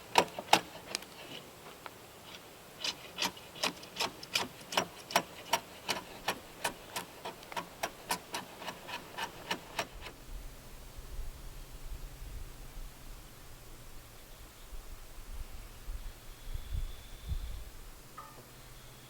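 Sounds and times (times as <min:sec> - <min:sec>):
hand tool working timber: 0:00.0 - 0:01.6, 0:02.3 - 0:10.2
low hum: 0:10.1 - 0:19.0.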